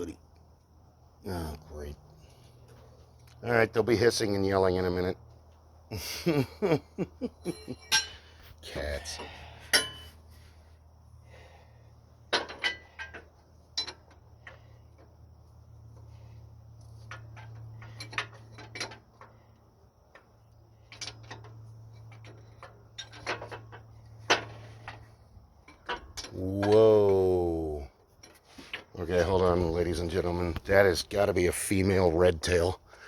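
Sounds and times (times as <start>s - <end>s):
low steady hum: 0.0s - 33.0s
hand tools clinking against metal: 7.4s - 8.4s, 9.0s - 10.2s, 12.3s - 14.5s.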